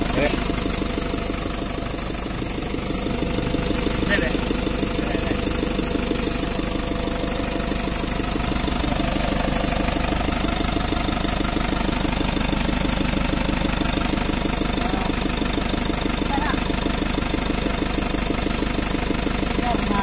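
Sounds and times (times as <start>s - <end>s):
van engine idling: 0.0s - 20.0s.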